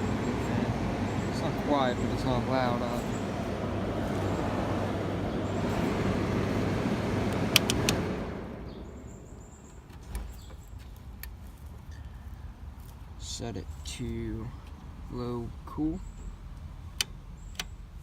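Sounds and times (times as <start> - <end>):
air conditioner fan whooshing: 0.0 - 10.4.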